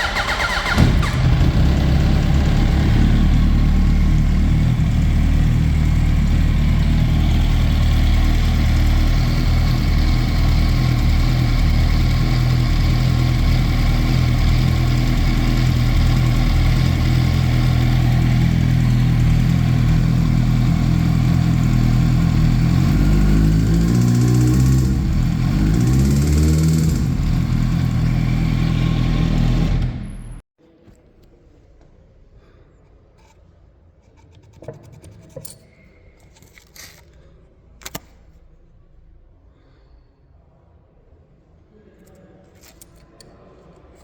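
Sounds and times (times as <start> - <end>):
motorcycle engine idling: 0.0 - 30.4.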